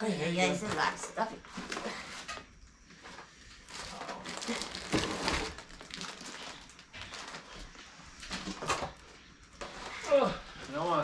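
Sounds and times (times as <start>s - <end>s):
packaging rustling and crinkling: 3.0s - 10.8s.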